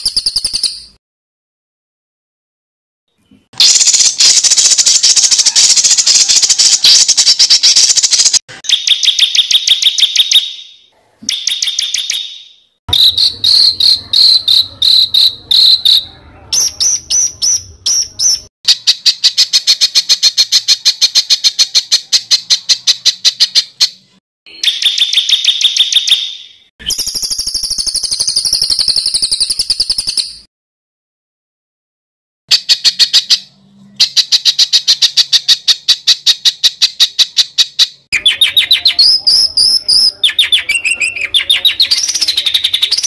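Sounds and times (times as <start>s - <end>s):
bird trills and rattling calls: 0.0s - 0.9s, 3.2s - 30.4s.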